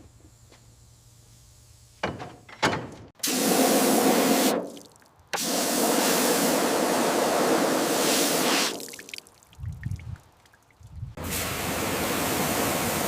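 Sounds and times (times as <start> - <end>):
nozzle spraying with hiss: 3.2 - 4.6, 5.4 - 8.8, 11.2 - 13.0.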